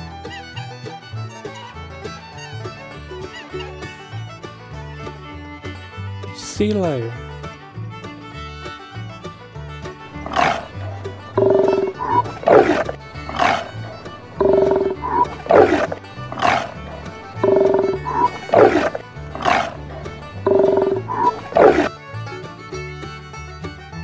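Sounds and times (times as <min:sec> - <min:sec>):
background music: 0:09.1 - 0:22.4
sea lion barking: 0:10.1 - 0:21.9.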